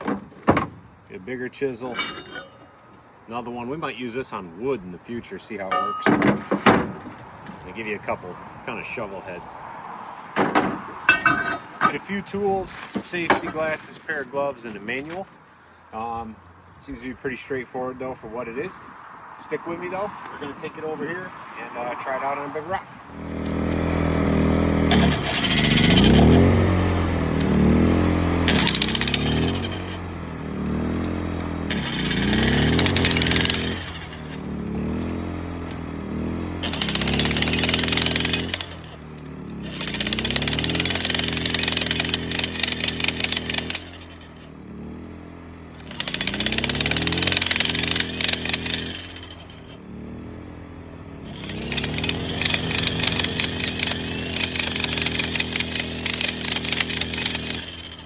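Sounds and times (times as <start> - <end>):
electric jackhammer hammering rock: 23.2 - 58.0.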